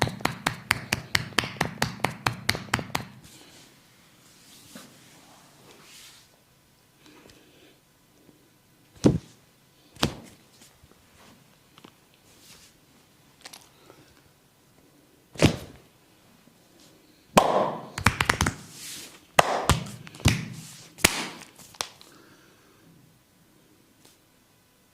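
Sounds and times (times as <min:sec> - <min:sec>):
hands slapping a body: 0:00.0 - 0:03.2, 0:10.0 - 0:10.4, 0:17.4 - 0:18.6, 0:19.4 - 0:22.0.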